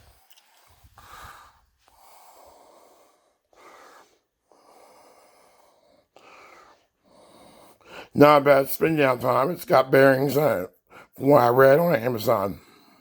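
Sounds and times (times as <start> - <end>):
breath puffs close to microphone: 0.0 - 8.2.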